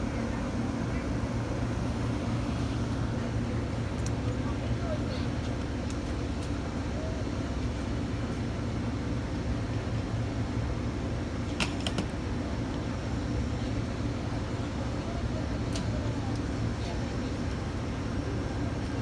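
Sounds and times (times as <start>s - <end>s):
diesel locomotive idling: 0.0s - 8.2s.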